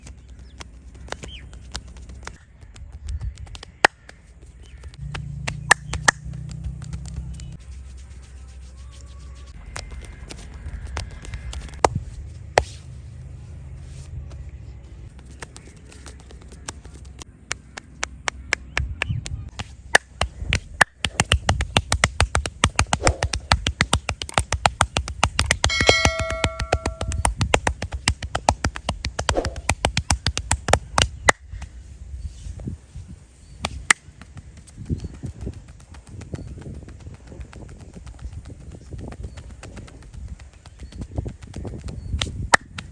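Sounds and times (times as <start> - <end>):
brief ringing tone: 25.7 - 27.2.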